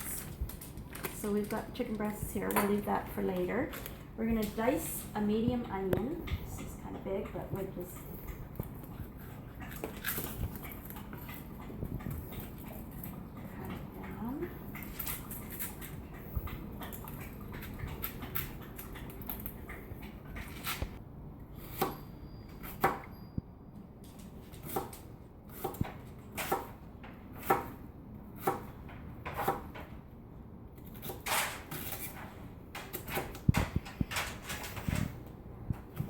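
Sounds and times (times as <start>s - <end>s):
knife chopping on cutting board: 24.6s - 27.8s, 28.4s - 28.7s, 29.3s - 29.8s.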